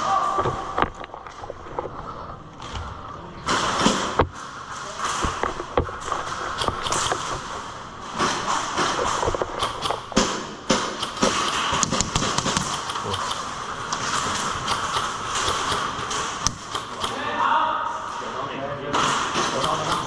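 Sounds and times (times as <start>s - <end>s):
sharp knocks or clicks: 6.6s - 7.5s, 8.8s - 17.3s, 19.3s - 20.0s.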